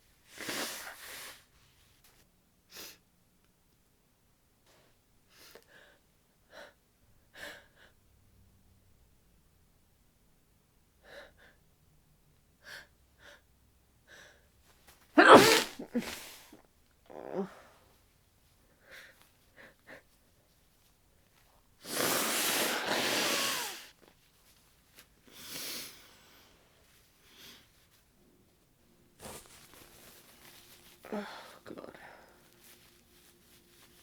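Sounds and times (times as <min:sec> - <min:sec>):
nose blowing into tissue: 0:00.3 - 0:01.5, 0:15.2 - 0:17.5, 0:21.8 - 0:24.0, 0:29.2 - 0:34.0
congested sniffles: 0:15.2 - 0:17.6, 0:21.8 - 0:24.0, 0:29.2 - 0:34.0
loud sneeze: 0:15.2 - 0:17.6, 0:21.8 - 0:23.9.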